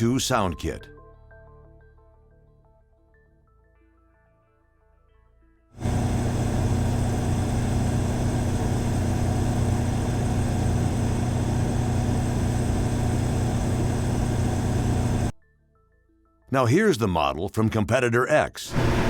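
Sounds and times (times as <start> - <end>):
generator engine hum: 5.8 - 15.3, 18.7 - 19.0.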